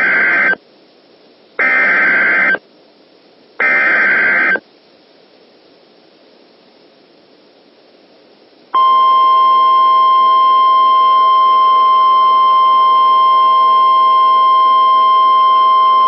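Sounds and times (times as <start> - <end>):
loud steady alarm tone: 0.0 - 0.6, 1.6 - 2.6, 3.6 - 4.6, 8.8 - 16.0
faint radio hiss: 0.0 - 16.0.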